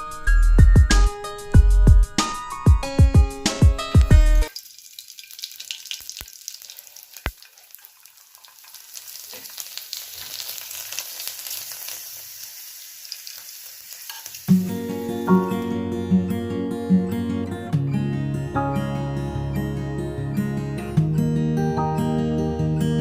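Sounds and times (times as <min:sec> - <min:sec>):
food sizzling in hot oil: 0:04.5 - 0:15.6.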